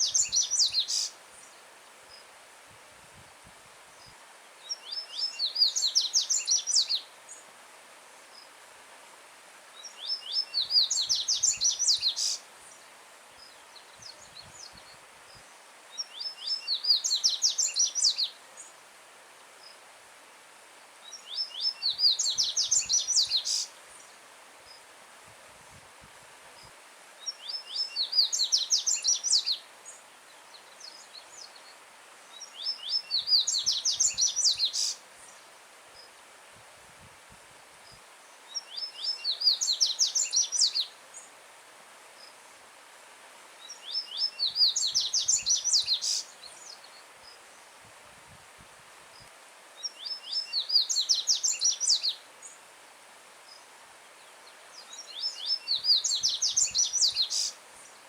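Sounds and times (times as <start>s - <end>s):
bird singing: 43.6s - 47.0s, 49.8s - 52.2s, 54.2s - 57.6s.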